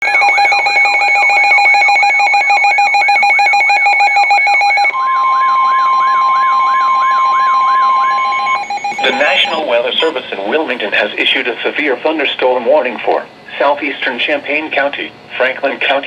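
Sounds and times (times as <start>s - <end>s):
electronic sweeping alarm: 0.0s - 10.9s
steady high alarm tone: 0.0s - 11.4s
pulsing beep: 3.1s - 10.8s.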